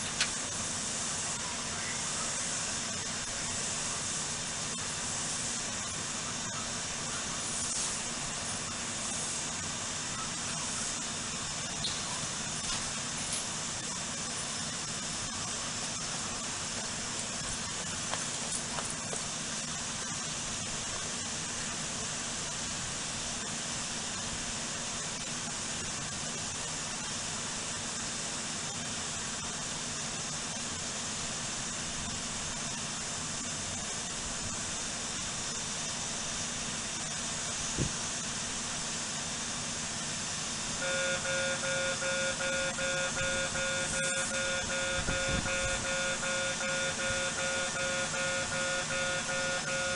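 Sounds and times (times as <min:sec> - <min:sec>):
steady hiss: 0:00.0 - 0:49.9
level crossing warning bell: 0:40.8 - 0:49.9.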